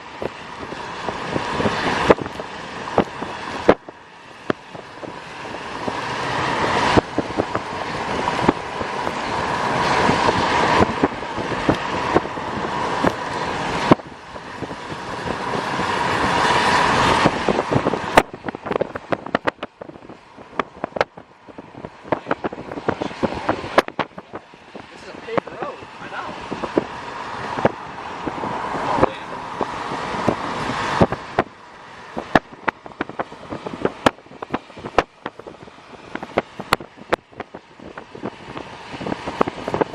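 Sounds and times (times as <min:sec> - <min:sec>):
rushing noise: 0:00.0 - 0:39.9
rain taps striking car: 0:00.1 - 0:39.9.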